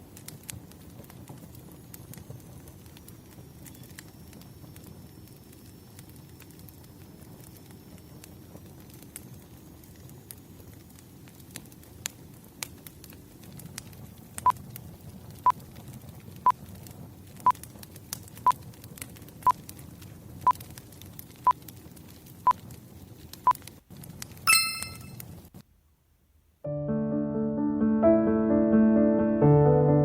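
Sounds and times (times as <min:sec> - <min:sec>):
wood fire crackling: 0:00.0 - 0:25.6
ringing chime: 0:24.5 - 0:25.1
timer short beeps: 0:24.5 - 0:25.1.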